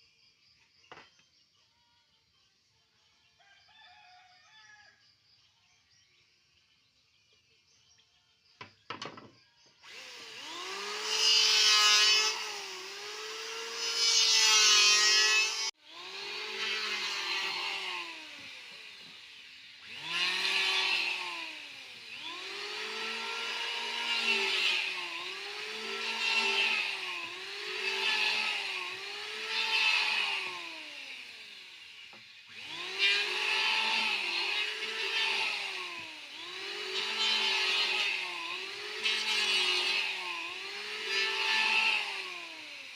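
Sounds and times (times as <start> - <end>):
electric hand planer shaving wood: 9.8 - 42.9
rasp of wood shavings: 9.8 - 42.9.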